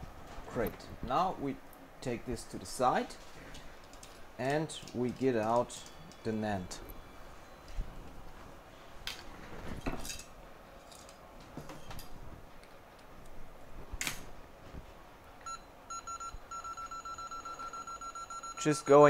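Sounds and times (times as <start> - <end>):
rapid electronic beeping: 15.9 - 19.0.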